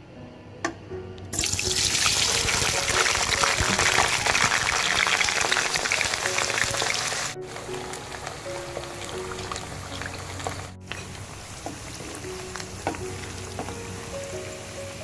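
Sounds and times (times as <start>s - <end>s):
soft background music: 0.0s - 15.0s
water running from a tap: 1.4s - 7.4s.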